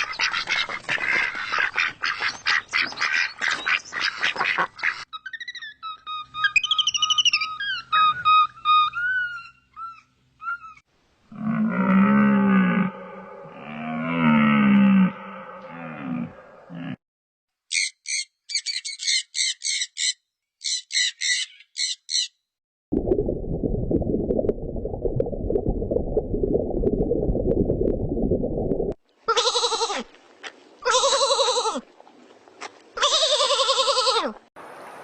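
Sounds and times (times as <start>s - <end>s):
sheep or goat bleating: 29.3s - 30.1s, 30.8s - 31.8s, 33.0s - 34.4s.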